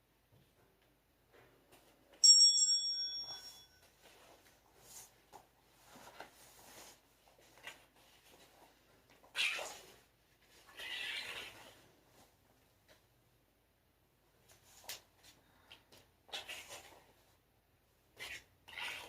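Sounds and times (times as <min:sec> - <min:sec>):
small timer bell ringing: 0:02.2 - 0:03.9.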